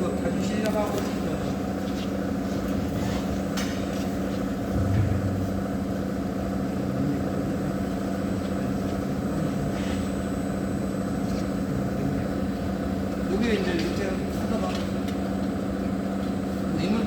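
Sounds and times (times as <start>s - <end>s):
machine humming with low tone: 0.0s - 17.0s.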